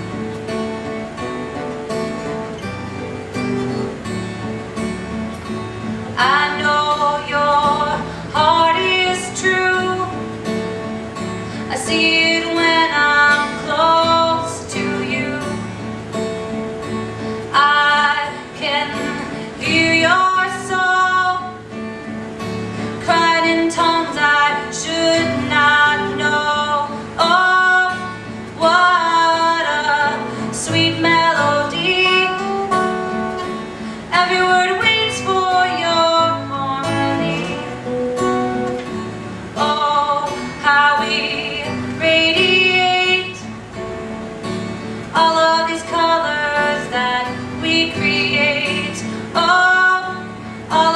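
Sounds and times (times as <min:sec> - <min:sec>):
acoustic guitar strumming: 0:00.0 - 0:50.9.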